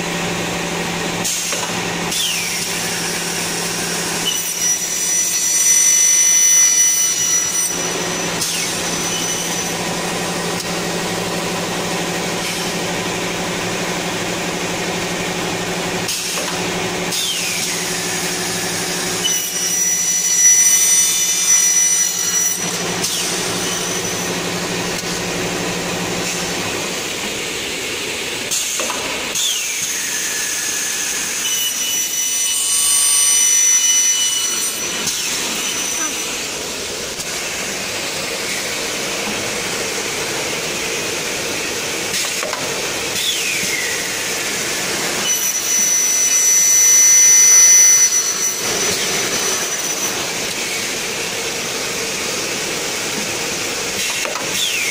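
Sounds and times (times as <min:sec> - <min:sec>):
saw cutting aluminium: 0:00.0 - 0:54.9
falling saw whine: 0:00.1 - 0:27.7, 0:29.2 - 0:42.2.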